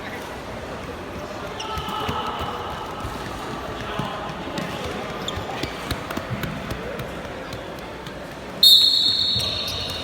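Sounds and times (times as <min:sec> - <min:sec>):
referee's whistle blast: 0:08.6 - 0:10.0.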